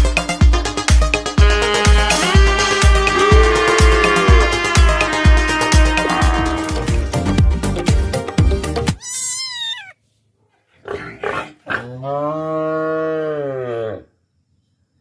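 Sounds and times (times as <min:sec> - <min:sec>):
dance music with heavy beat: 0:00.0 - 0:08.8
cow mooing: 0:02.3 - 0:07.0, 0:11.7 - 0:14.1
high wavering animal call: 0:03.1 - 0:07.0, 0:09.0 - 0:10.0.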